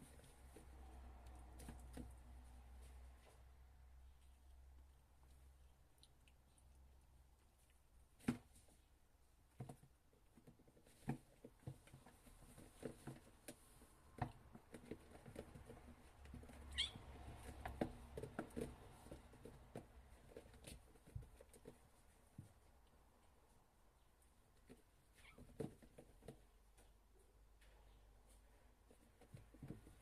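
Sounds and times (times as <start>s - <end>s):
kittens tapping and knocking: 9.5s - 22.6s, 24.6s - 27.0s, 28.8s - 30.0s.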